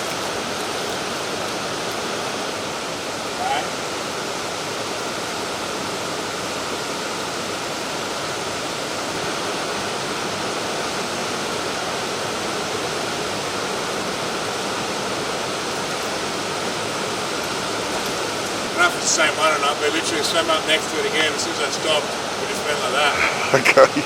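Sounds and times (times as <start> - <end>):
river water rushing: 0.0 - 24.0.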